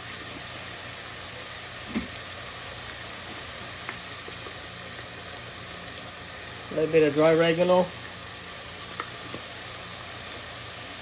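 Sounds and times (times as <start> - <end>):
meat sizzling in oil: 0.0 - 11.0.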